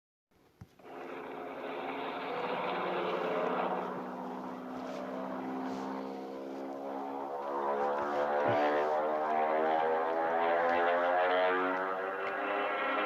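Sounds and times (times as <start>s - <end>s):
propeller airplane engine drone: 0.4s - 13.0s.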